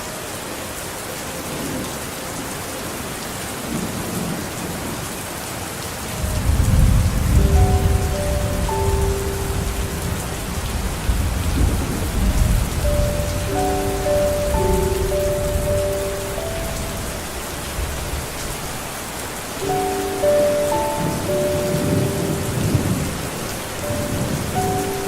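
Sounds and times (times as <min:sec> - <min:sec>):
rain hissing: 0:06.0 - 0:25.0
thunder rumbling: 0:06.1 - 0:18.9, 0:19.5 - 0:25.0
soft held tones: 0:12.9 - 0:17.4.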